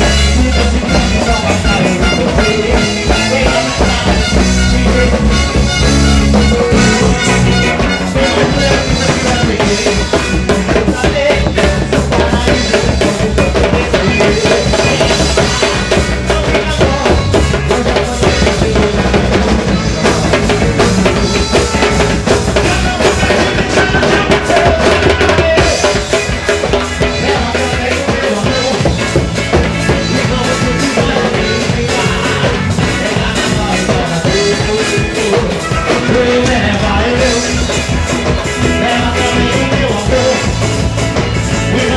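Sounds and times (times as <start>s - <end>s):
carnival music with drums: 0.0s - 41.9s.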